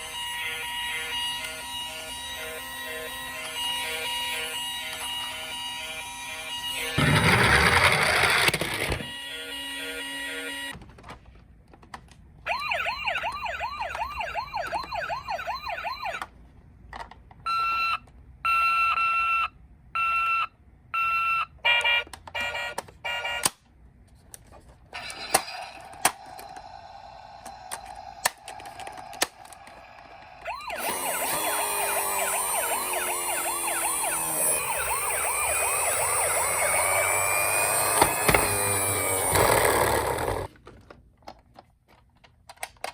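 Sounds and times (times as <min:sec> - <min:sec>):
toy siren wailing: 0:00.0 - 0:10.8, 0:12.5 - 0:16.2, 0:25.0 - 0:40.5.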